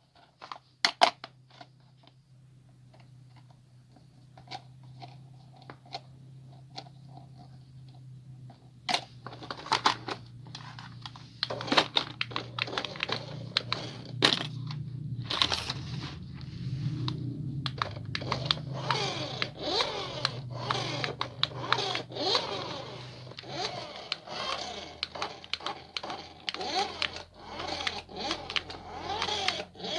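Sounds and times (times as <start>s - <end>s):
packaging clicks and taps: 8.9s - 15.8s, 17.0s - 22.1s, 24.9s - 27.2s
plastic and cardboard crinkling: 8.9s - 29.6s.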